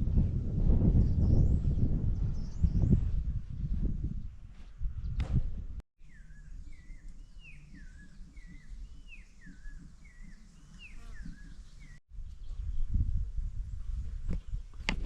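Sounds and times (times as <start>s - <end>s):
bird whistling: 6.1s - 12.0s.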